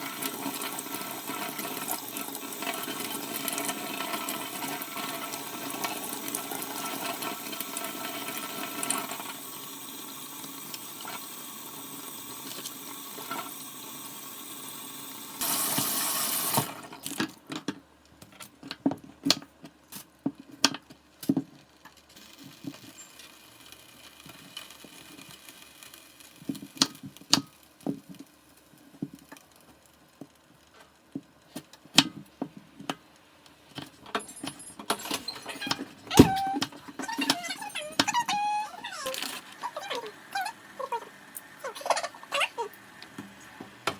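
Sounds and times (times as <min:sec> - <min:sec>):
water rushing: 0:35.5 - 0:43.9.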